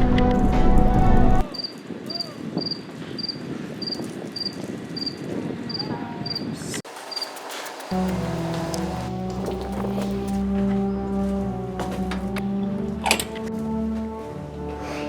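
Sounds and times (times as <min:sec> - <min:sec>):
music: 0:00.0 - 0:01.5, 0:07.9 - 0:15.0
crickets chirping: 0:01.5 - 0:10.4.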